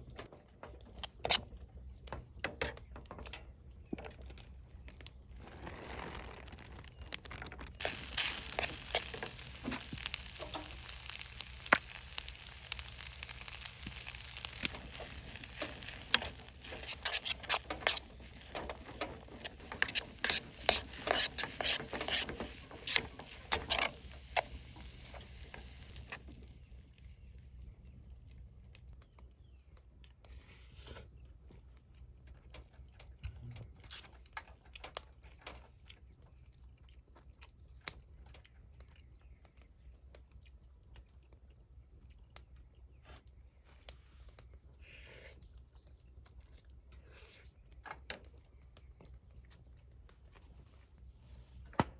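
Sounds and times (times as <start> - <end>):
food sizzling in a hot pan: 7.8 - 26.2.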